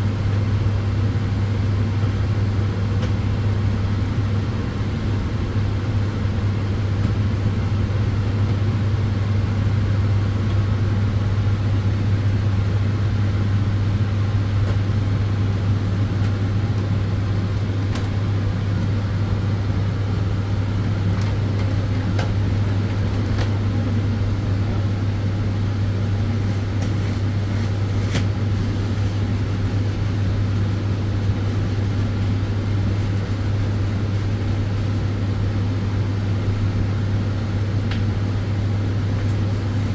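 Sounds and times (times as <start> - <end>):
cooling fans rushing: 0.0 - 39.9.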